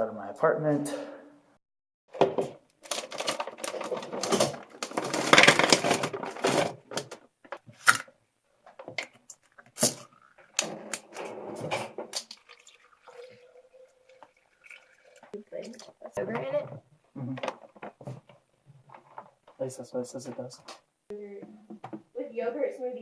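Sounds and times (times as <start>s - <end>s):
objects clattering and clicking: 2.1s - 12.5s.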